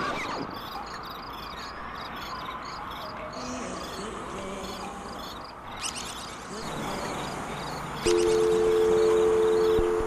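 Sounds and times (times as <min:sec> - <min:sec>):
crickets chirping: 0:01.0 - 0:09.8.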